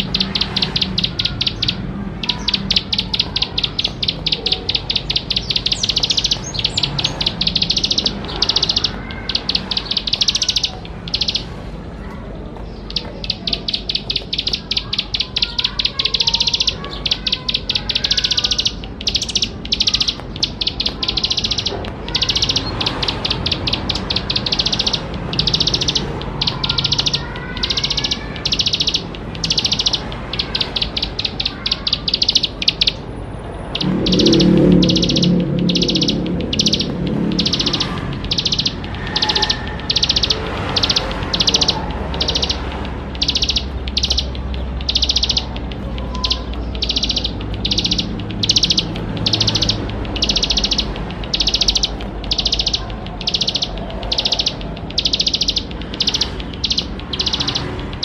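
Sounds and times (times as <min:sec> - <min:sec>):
bird singing buzzy trills: 0:00.0 - 0:58.0
low dull sound: 0:33.8 - 0:39.1.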